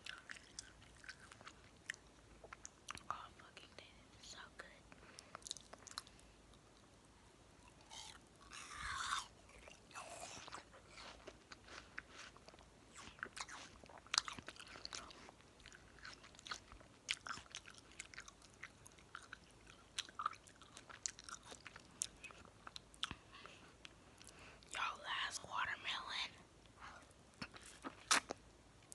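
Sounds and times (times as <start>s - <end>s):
chewing watermelon: 0.0s - 3.1s, 5.2s - 6.8s, 7.6s - 24.8s, 26.8s - 28.9s
wet bites of watermelon: 27.4s - 28.4s.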